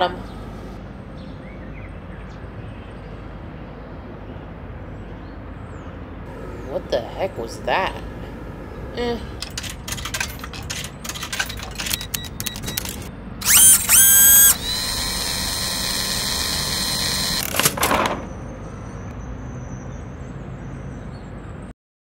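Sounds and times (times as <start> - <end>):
loud rising whines: 6.3 - 9.0, 12.7 - 17.5
steady electric hum: 6.3 - 9.9
rapid mechanical clicking: 9.4 - 18.0
short rattle: 9.4 - 18.4.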